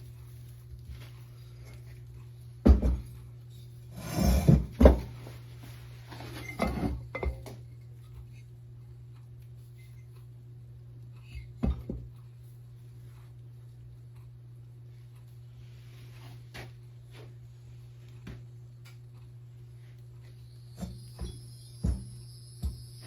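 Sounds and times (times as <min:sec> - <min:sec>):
steady low hum: 0:00.0 - 0:23.0
hard objects knocking on workbench: 0:02.6 - 0:03.1.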